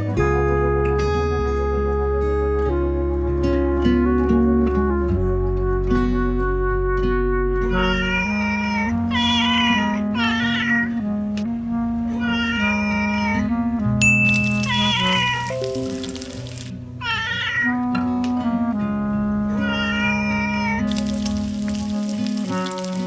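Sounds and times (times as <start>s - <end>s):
background music: 0.0s - 23.0s
cartoon cat meows: 7.7s - 11.0s, 12.2s - 13.5s, 14.5s - 15.6s, 17.0s - 17.8s, 19.6s - 20.9s.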